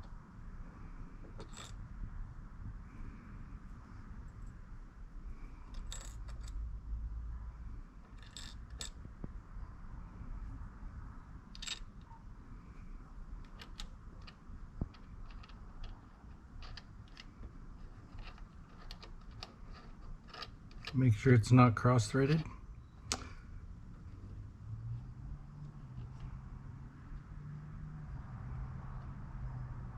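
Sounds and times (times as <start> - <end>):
small metallic clicks of nuts: 1.4 - 1.8, 5.7 - 6.6, 8.0 - 9.0, 11.5 - 12.2, 13.4 - 21.0, 23.0 - 23.4.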